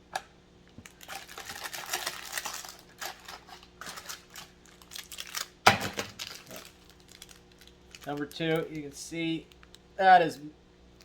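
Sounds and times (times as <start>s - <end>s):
plastic packages crinkling: 0.8s - 9.8s
package knocking down: 5.6s - 6.2s.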